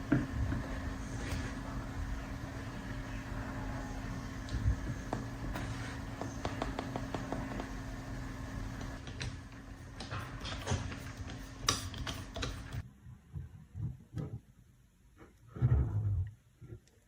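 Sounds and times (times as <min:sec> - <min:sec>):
steady hum: 0:00.0 - 0:13.2.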